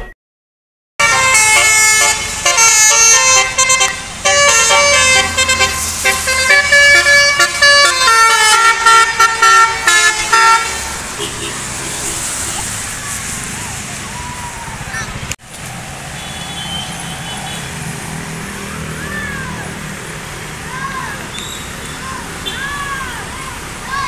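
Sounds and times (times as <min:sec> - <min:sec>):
musical air horn playing tune: 0:01.0 - 0:12.2.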